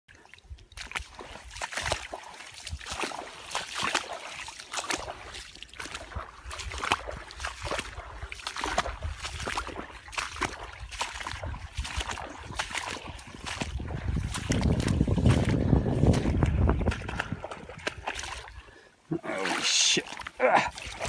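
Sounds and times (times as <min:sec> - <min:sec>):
water trickling and splashing: 0:00.1 - 0:21.0.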